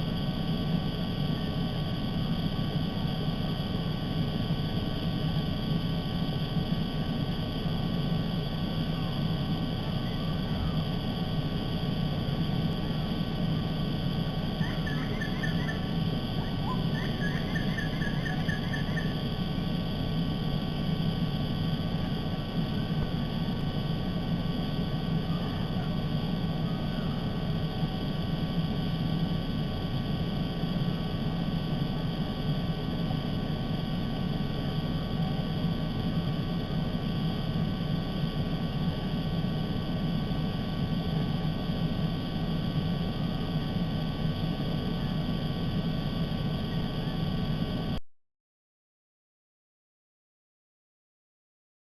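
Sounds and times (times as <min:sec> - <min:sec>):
low rumble and hum: 0:00.0 - 0:48.0
bird trilling: 0:14.6 - 0:19.2.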